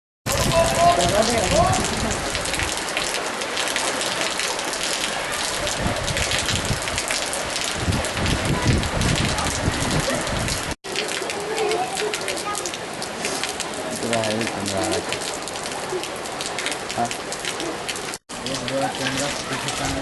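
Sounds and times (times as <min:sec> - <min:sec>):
heavy rain falling: 0:00.3 - 0:20.0.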